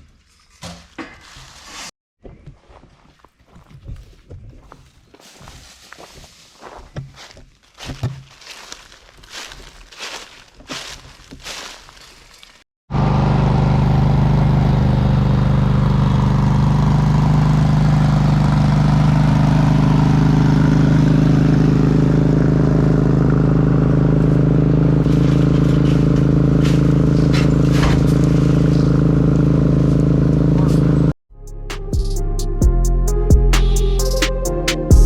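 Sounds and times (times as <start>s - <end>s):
quiet scuffing: 1.1s - 12.6s
diesel engine running: 12.9s - 35.0s.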